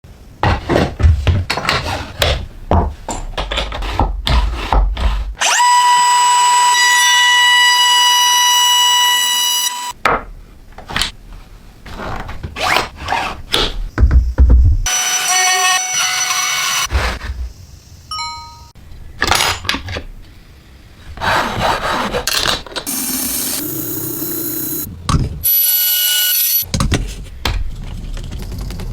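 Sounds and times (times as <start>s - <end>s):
power tool high whine: 5.4s - 9.9s, 22.9s - 24.9s, 25.5s - 26.6s.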